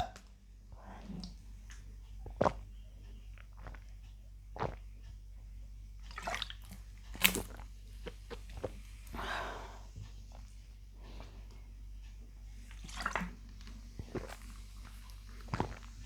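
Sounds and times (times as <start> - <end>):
person gulping a drink: 2.2 - 2.7, 3.3 - 4.0, 4.6 - 4.9, 6.0 - 9.3, 12.7 - 16.0.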